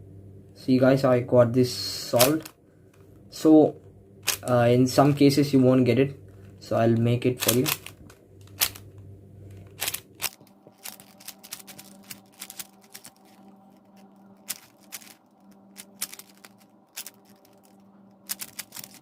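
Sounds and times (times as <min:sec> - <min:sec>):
puzzle cube layers clicking: 0:09.8 - 0:19.0.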